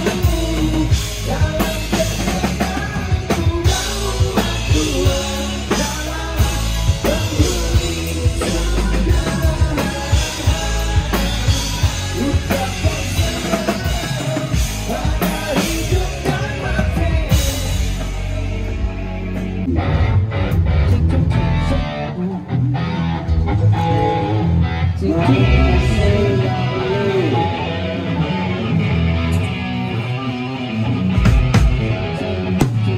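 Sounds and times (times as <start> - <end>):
drums and cymbals: 0.0 - 19.8, 31.1 - 32.9
rock band playing live: 0.0 - 32.9.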